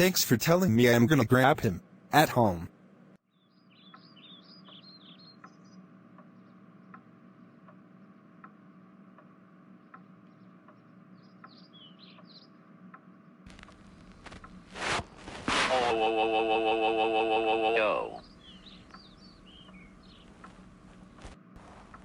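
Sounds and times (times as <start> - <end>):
small birds chirping: 3.3 - 15.4, 17.4 - 22.0
low hum: 4.4 - 22.0
steady ticking: 5.4 - 14.7, 18.1 - 22.0.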